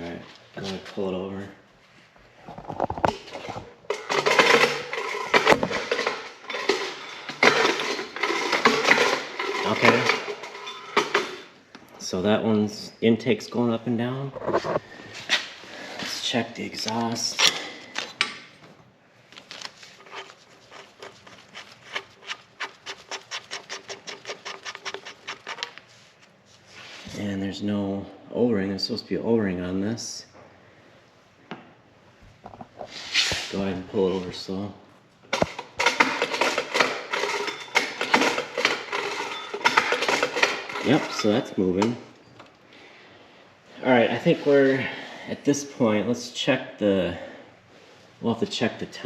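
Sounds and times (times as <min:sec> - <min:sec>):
metallic clicking and rasping: 0:20.0 - 0:25.8.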